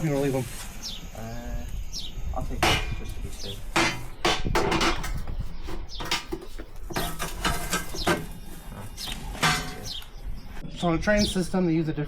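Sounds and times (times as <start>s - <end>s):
sheet metal panels rattling: 3.8s - 8.4s, 9.4s - 10.0s.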